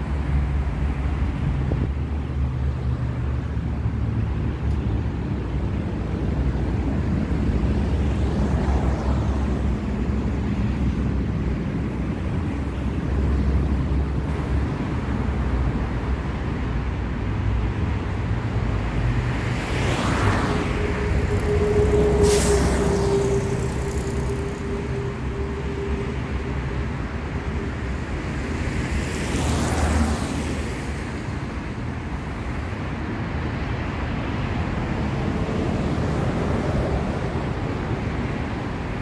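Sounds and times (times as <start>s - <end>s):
heavy vehicle whine: 0.0s - 39.0s
traffic rumble: 0.0s - 39.0s.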